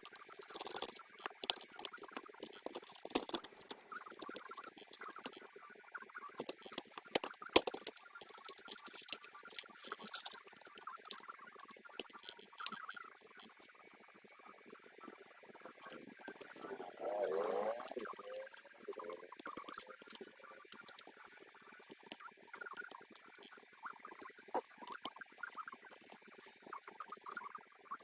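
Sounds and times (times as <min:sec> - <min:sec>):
laptop parts clicking and scraping: 0:00.0 - 0:05.5, 0:06.4 - 0:13.0.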